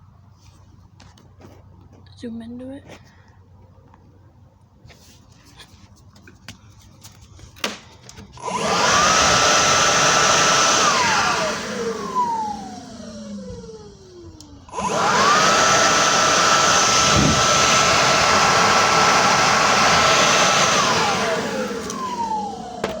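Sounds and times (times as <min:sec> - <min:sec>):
leaf blower whining: 0:07.6 - 0:23.0.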